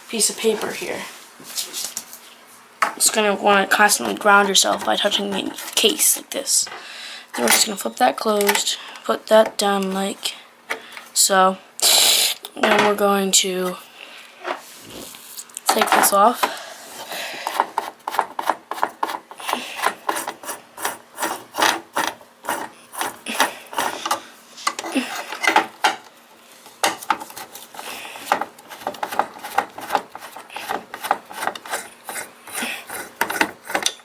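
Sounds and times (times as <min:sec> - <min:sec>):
computer parts scraping and clicking: 0:17.5 - 0:26.0, 0:26.9 - 0:34.0.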